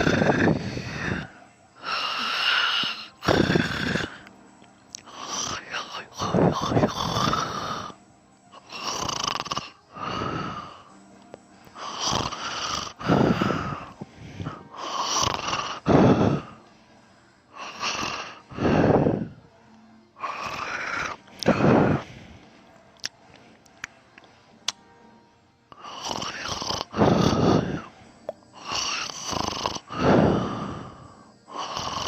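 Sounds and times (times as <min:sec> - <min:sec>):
person snoring: 0:00.0 - 0:04.3, 0:05.1 - 0:08.0, 0:08.6 - 0:10.9, 0:11.8 - 0:16.6, 0:17.6 - 0:19.4, 0:20.2 - 0:22.4, 0:25.8 - 0:28.0, 0:28.6 - 0:32.0.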